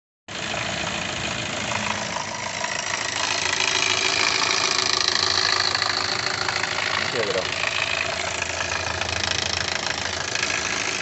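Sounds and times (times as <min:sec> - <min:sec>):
car engine running: 0:00.3 - 0:11.0.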